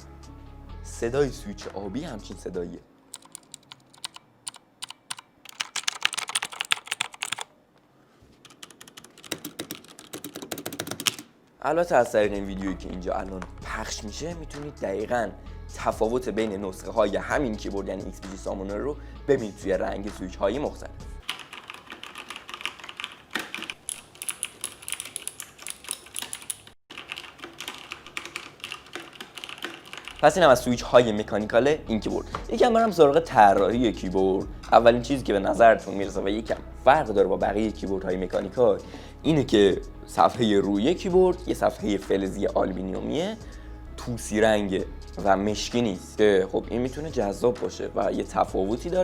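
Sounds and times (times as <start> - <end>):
mechanical keyboard typing: 3.1 - 7.5, 8.4 - 11.3, 21.2 - 30.4.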